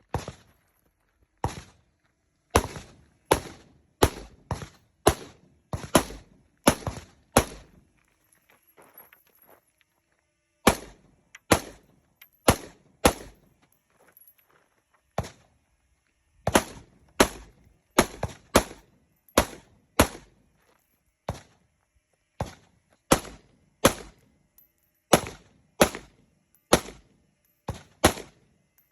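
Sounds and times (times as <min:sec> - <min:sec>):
rifle firing single shots: 0:02.5 - 0:04.4, 0:05.0 - 0:07.8, 0:10.6 - 0:11.8, 0:12.5 - 0:13.4, 0:16.5 - 0:20.3, 0:23.1 - 0:24.2, 0:25.1 - 0:27.1, 0:27.7 - 0:28.4.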